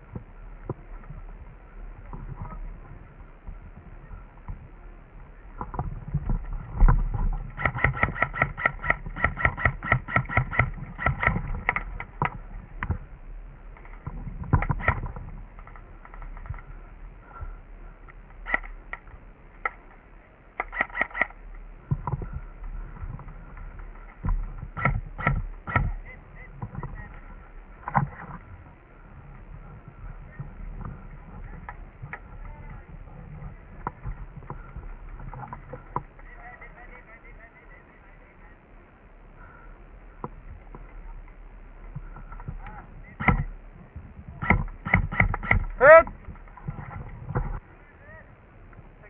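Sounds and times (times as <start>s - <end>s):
airsoft guns firing: 7.5s - 12.0s.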